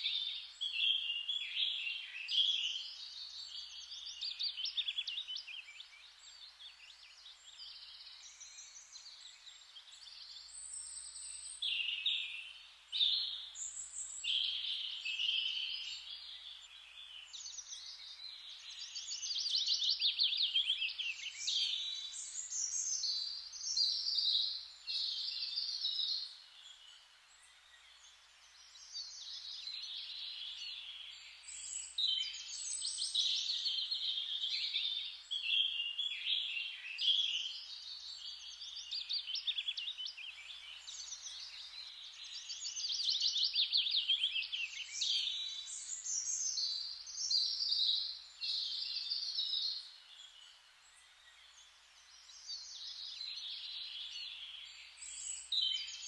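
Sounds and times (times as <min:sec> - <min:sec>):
songbirds trilling and warbling: 0:00.0 - 0:56.0.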